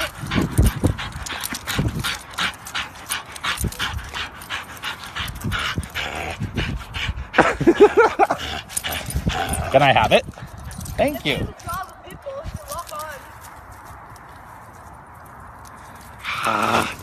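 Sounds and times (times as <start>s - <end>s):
dog panting: 0.0s - 12.8s.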